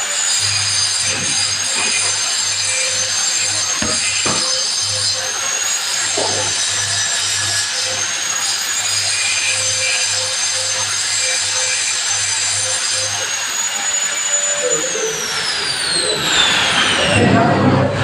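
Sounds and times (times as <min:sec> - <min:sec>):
hand saw cutting: 0:00.0 - 0:17.1
sharp knocks: 0:01.0 - 0:05.1.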